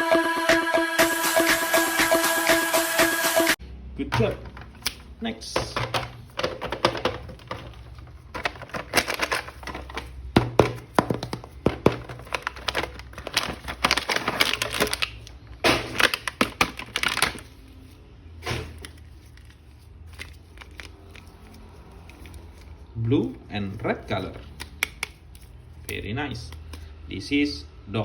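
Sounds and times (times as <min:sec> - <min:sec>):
plastic toy clicks and rustles: 0:04.2 - 0:10.2, 0:11.0 - 0:15.3, 0:18.8 - 0:22.7.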